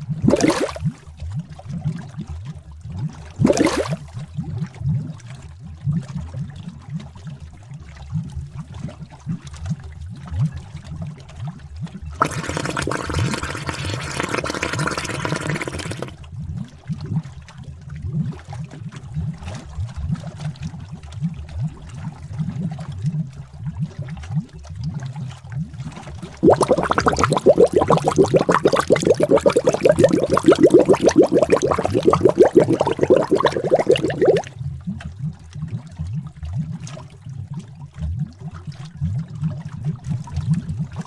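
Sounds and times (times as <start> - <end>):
thick liquid bubbling: 0.0 - 1.8, 3.3 - 5.1, 12.1 - 16.2, 26.4 - 34.9.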